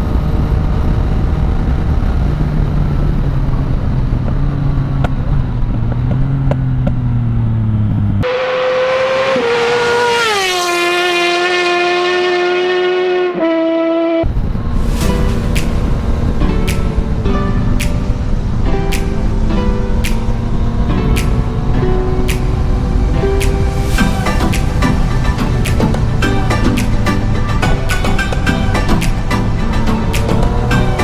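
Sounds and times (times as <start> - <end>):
held musical tone: 14.8 - 31.0.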